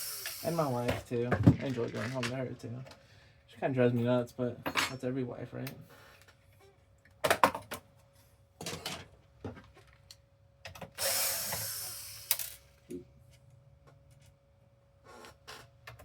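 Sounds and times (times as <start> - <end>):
hiss: 0.0 - 0.8, 11.1 - 12.4.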